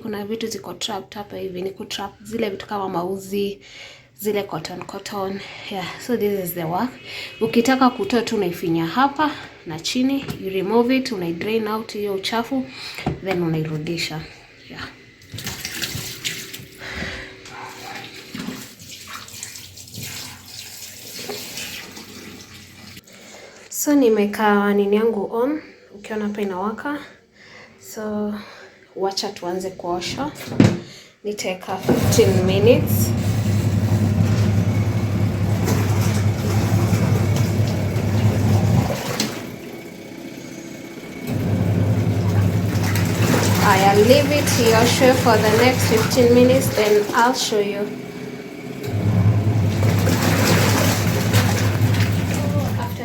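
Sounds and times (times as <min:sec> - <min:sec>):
water splashing in washing machine: 0:15.2 - 0:23.0, 0:31.7 - 0:53.0.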